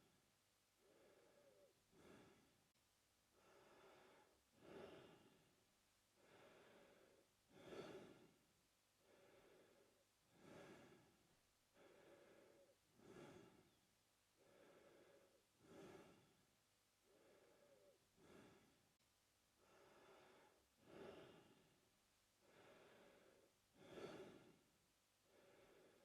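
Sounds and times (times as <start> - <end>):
man breathing through mouth: 0.8 - 2.5, 6.2 - 8.4, 9.0 - 11.2, 11.8 - 13.8, 14.4 - 16.4, 17.0 - 18.8, 19.6 - 21.6, 22.4 - 24.6.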